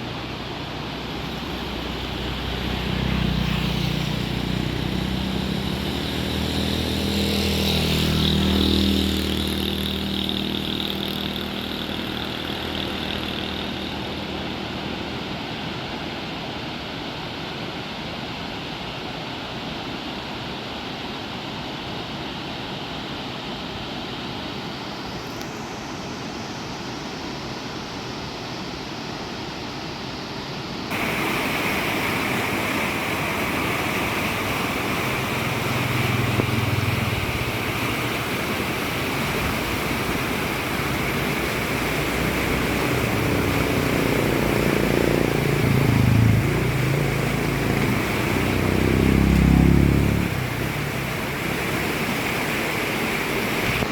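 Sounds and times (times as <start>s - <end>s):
engine hum: 0.0s - 16.1s, 30.9s - 53.9s
water rushing: 0.0s - 29.2s, 30.8s - 53.9s.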